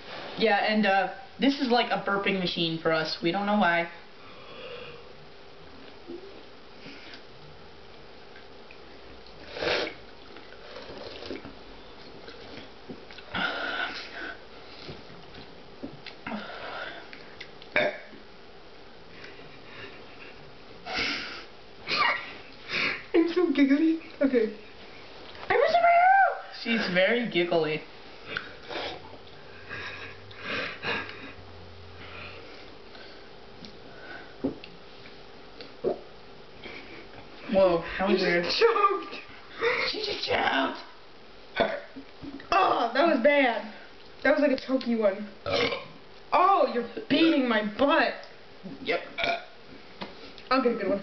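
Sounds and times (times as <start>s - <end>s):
faint liquid sounds: 8.2s - 17.8s
loud slurp from a can: 9.4s - 11.5s.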